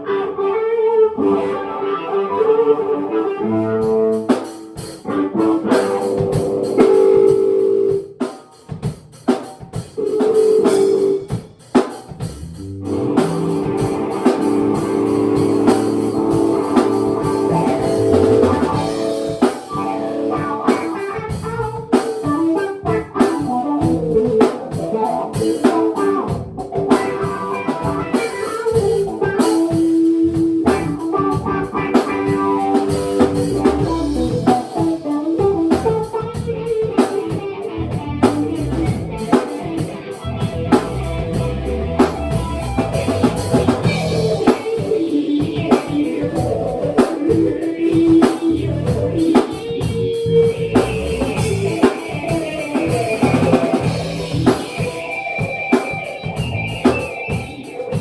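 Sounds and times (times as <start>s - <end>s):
bluesy guitar: 0.0s - 58.0s
drum kit beat: 3.8s - 58.0s.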